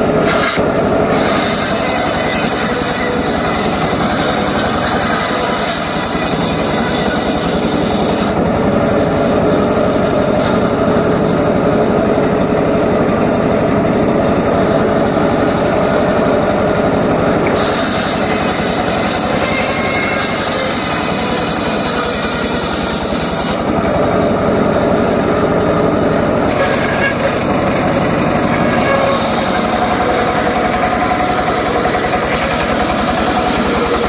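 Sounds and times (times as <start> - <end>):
saw blade cutting wood: 0.0 - 8.4, 15.4 - 24.3, 26.0 - 34.0
saw engine pulse: 0.0 - 34.0.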